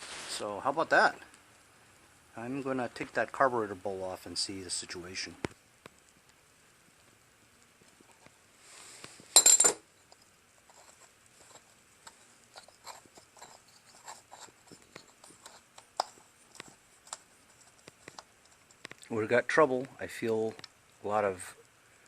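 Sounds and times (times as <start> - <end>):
metal tools clicking and clinking: 9.4 - 10.2.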